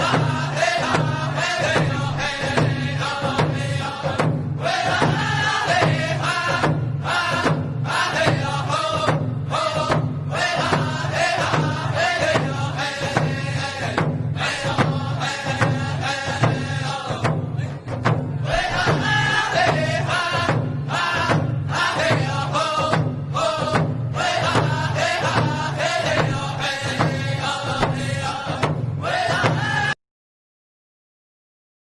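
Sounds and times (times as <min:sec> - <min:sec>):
chanted singing: 0:00.0 - 0:30.0
steady low beat: 0:18.4 - 0:21.6.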